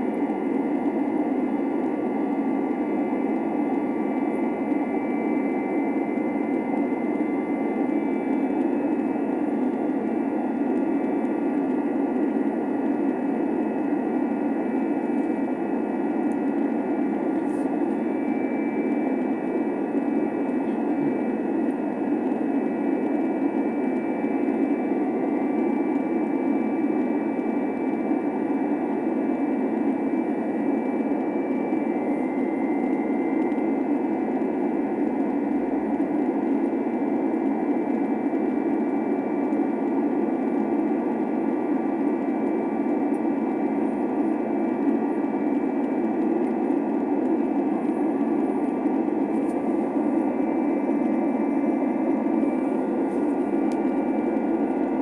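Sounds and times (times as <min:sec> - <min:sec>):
faint whining tones: 0:00.0 - 0:55.0
jet engines running: 0:00.0 - 0:55.0.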